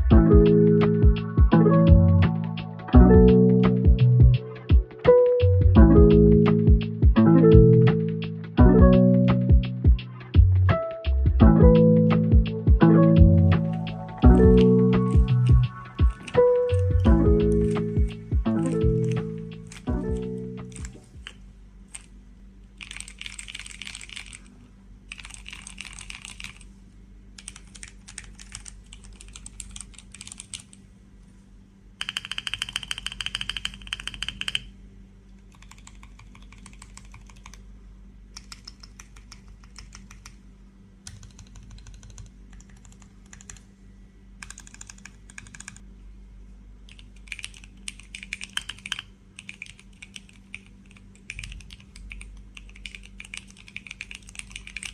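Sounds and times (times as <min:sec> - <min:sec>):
mechanical keyboard typing: 0:13.6 - 0:22.1, 0:22.8 - 0:24.5, 0:25.1 - 0:26.6, 0:27.4 - 0:30.8, 0:32.0 - 0:34.7, 0:35.5 - 0:37.6, 0:38.3 - 0:40.4, 0:41.0 - 0:43.7, 0:44.4 - 0:45.8, 0:46.9 - 0:54.9.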